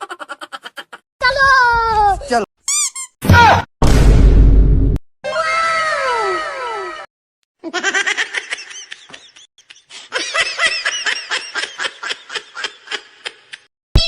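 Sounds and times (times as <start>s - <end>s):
person laughing rhythmically: 0.0s - 1.0s, 7.6s - 13.7s.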